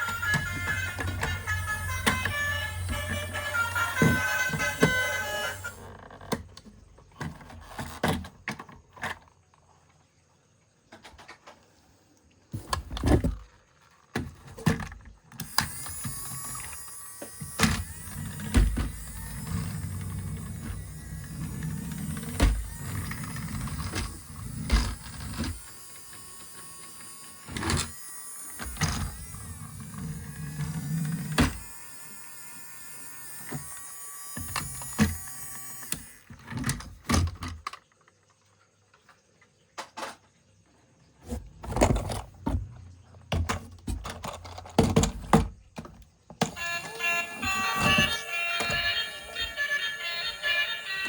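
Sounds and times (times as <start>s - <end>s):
short tune: 0.0s - 5.8s, 46.6s - 51.0s
small electric motor whirring: 0.0s - 6.2s, 15.4s - 36.5s, 46.6s - 51.0s
plastic knocks and clunks: 41.3s - 46.6s.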